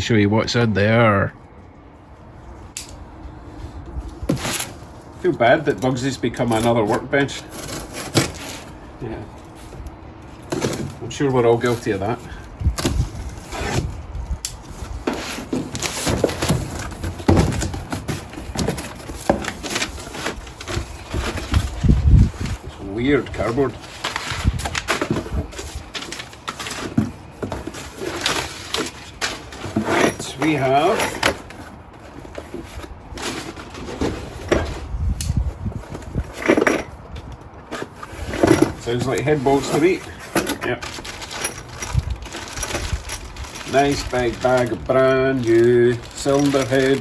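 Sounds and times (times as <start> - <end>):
cardboard box rustling and scraping: 3.5 - 37.0, 37.6 - 47.0
cardboard box rustling and knocking: 4.2 - 4.8, 10.4 - 11.0, 14.8 - 22.6.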